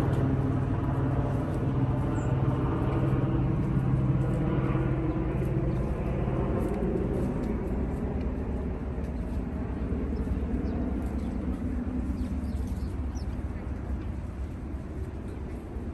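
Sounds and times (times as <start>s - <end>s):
steady low rumble: 0.0s - 15.9s
small birds chirping: 10.0s - 14.2s.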